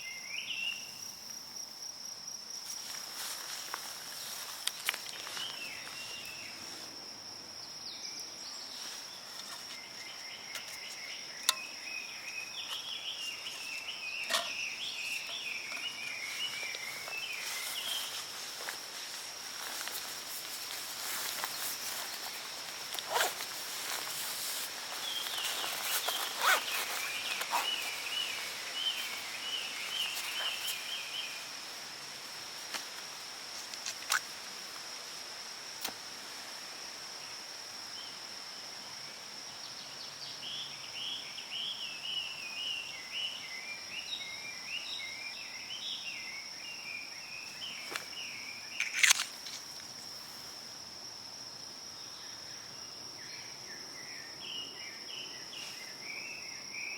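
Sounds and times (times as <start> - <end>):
high insect drone: 0.0 - 56.9.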